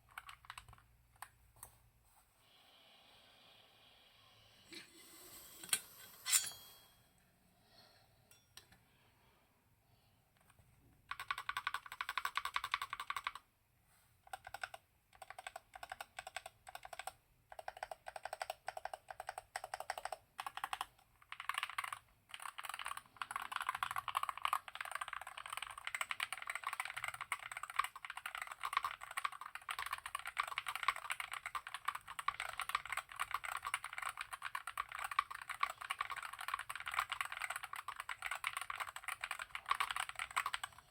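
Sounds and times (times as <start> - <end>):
mechanical keyboard typing: 0.0 - 1.4, 10.4 - 13.5, 14.3 - 40.9.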